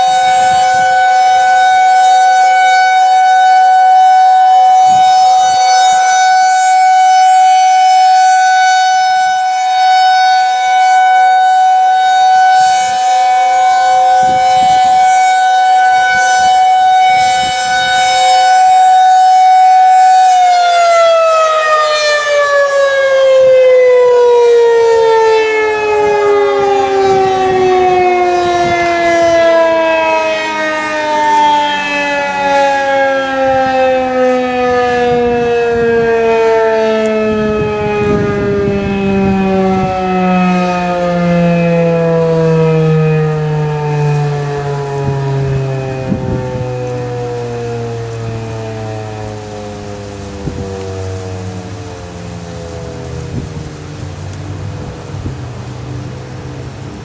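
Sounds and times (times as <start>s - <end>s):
warning siren: 0.0s - 57.0s.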